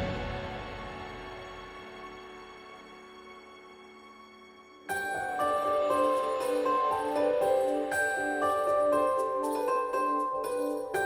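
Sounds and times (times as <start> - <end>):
melody of bell-like notes: 4.9 - 11.0
tinkling sleigh chimes: 4.9 - 11.0.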